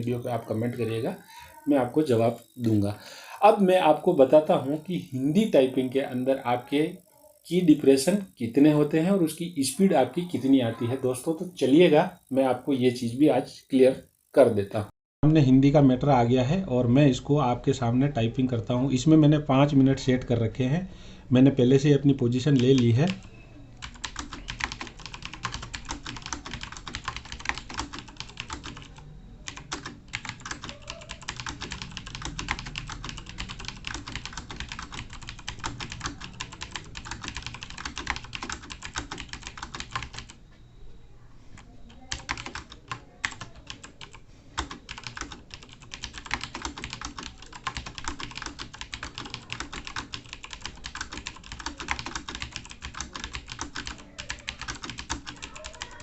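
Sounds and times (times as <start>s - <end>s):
fast typing on a keyboard: 22.4s - 40.4s, 41.9s - 56.0s.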